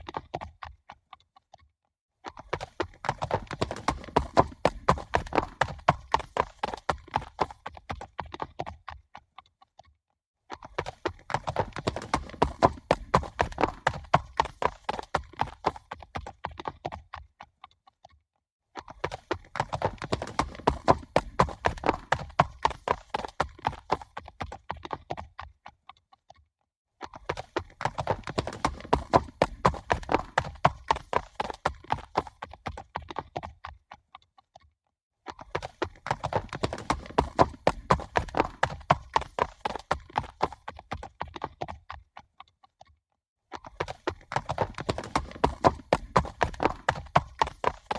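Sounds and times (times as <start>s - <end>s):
horses galloping: 2.2s - 9.0s, 10.6s - 17.3s, 18.8s - 25.5s, 27.0s - 33.8s, 35.3s - 42.0s, 43.5s - 47.9s.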